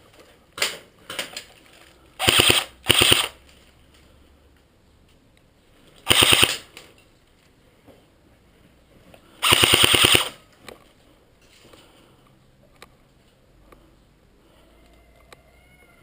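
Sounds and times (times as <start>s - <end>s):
airsoft gun full-auto bursts: 2.2s - 3.4s, 6.1s - 6.7s, 9.4s - 10.4s.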